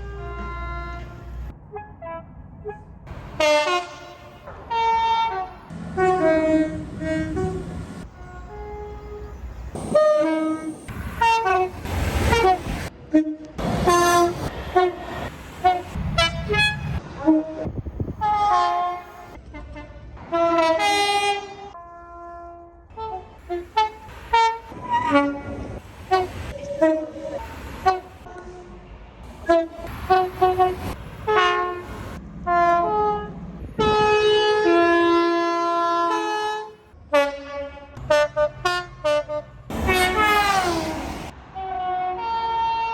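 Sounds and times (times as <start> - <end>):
train horn blasts: 0.0 - 42.9.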